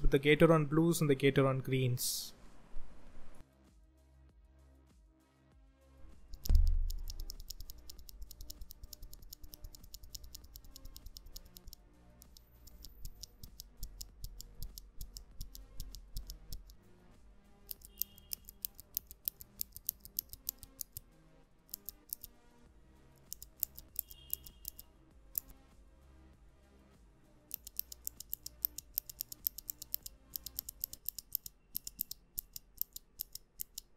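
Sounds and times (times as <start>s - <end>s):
faint background music: 0.0s - 33.9s
mechanical keyboard switch clicks: 6.3s - 16.8s, 17.7s - 21.0s, 21.7s - 22.3s, 23.2s - 24.8s, 27.5s - 33.9s
low thump: 6.4s - 6.9s.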